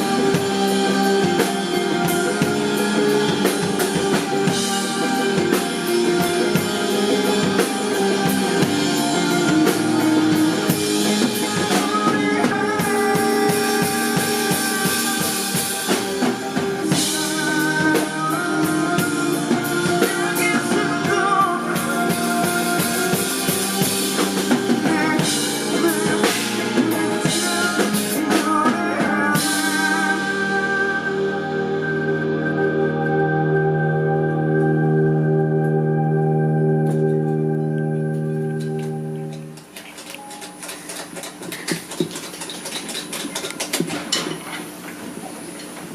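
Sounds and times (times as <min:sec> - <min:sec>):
drum kit playing: 0:00.0 - 0:32.8
sustained instrument tones: 0:00.0 - 0:39.6.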